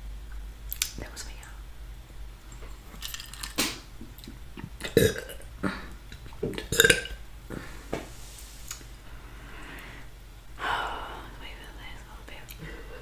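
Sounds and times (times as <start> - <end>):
woman burping: 4.8 - 6.0, 6.6 - 7.2.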